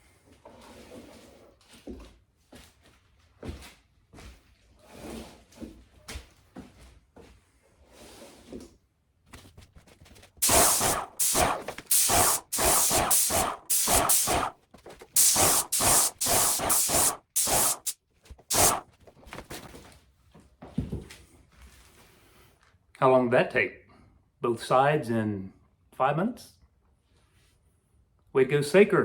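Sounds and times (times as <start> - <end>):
paint sprayer hissing bursts: 10.4 - 14.5, 15.2 - 18.8.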